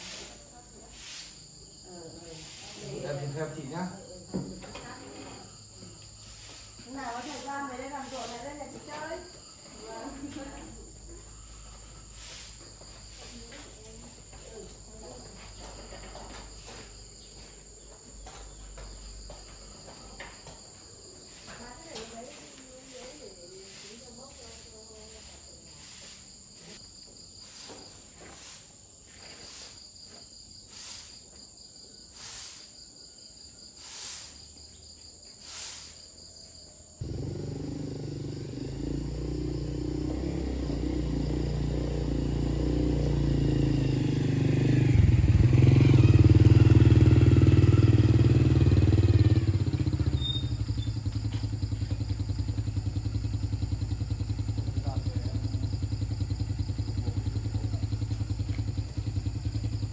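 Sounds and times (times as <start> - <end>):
insects chirping: 0.0 - 59.9
motorcycle engine running: 37.0 - 59.9.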